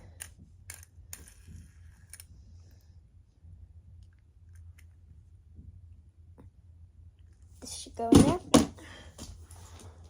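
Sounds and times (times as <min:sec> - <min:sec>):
steady low hum: 0:00.0 - 0:10.0
plastic fidget toys clicking: 0:00.2 - 0:02.3.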